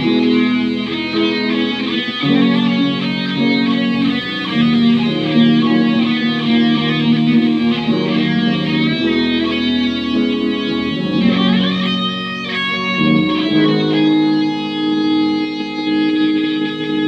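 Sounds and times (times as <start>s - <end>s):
guitar: 0.0s - 17.0s
live band playing rock ballad: 0.0s - 17.0s.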